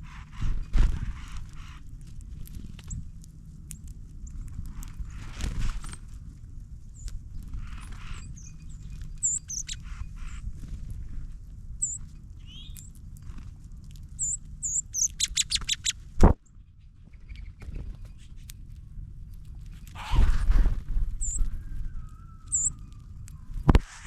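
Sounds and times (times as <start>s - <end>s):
low background rumble: 0.0s - 24.0s
songbirds chirping: 5.9s - 20.2s, 21.1s - 23.7s.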